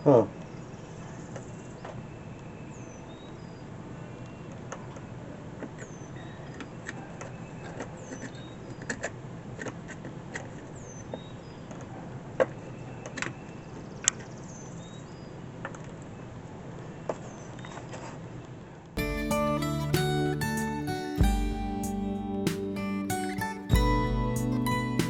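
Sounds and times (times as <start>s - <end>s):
steady low background noise: 18.3s - 25.0s.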